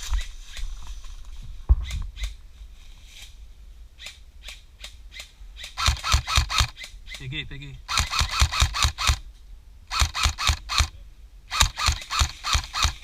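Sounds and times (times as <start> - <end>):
airsoft gun rapid firing: 5.8 - 6.8, 7.9 - 9.2, 9.9 - 10.9, 11.5 - 13.0.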